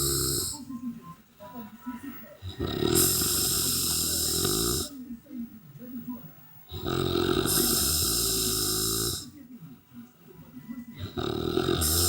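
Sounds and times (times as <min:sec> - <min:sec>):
person snoring: 0:00.0 - 0:00.7, 0:02.4 - 0:05.0, 0:06.7 - 0:09.3, 0:11.0 - 0:12.0.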